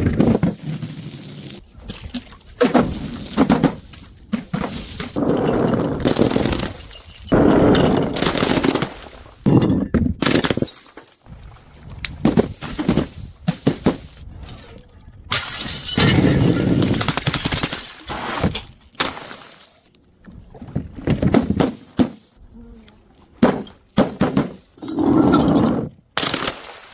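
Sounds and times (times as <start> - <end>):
glass bottles breaking: 5.2 - 11.2, 15.3 - 19.9.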